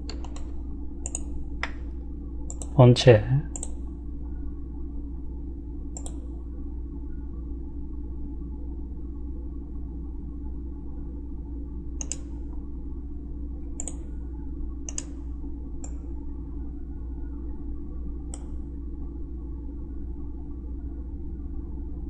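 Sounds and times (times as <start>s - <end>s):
computer mouse clicking: 0.0s - 1.8s, 2.5s - 2.8s, 3.5s - 3.8s, 5.9s - 6.3s, 12.0s - 12.3s, 13.8s - 14.1s, 14.9s - 15.2s, 18.3s - 18.6s
low steady hum: 0.0s - 22.0s.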